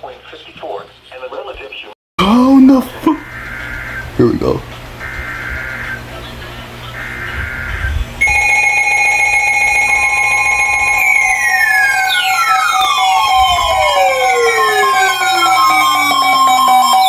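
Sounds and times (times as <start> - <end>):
warbling data burst: 7.0 - 17.0
falling pitch sweeps: 8.2 - 17.0
steady alert tone: 8.2 - 17.0.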